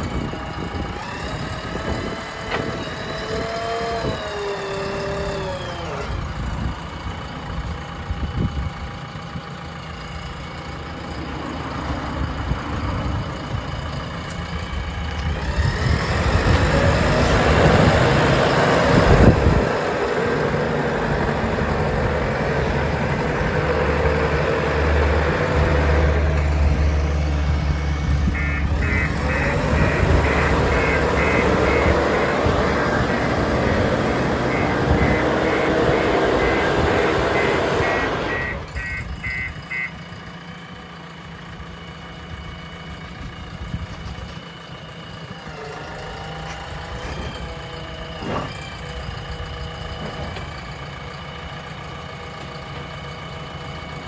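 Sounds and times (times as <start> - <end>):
diesel engine revving: 0.0 - 54.0
reversing alarm beeps: 28.4 - 39.9.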